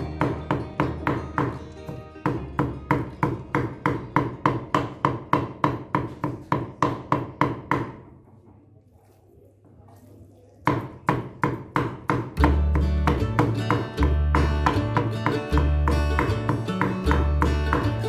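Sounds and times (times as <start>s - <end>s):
plucked guitar music: 0.0s - 4.2s, 12.4s - 18.0s.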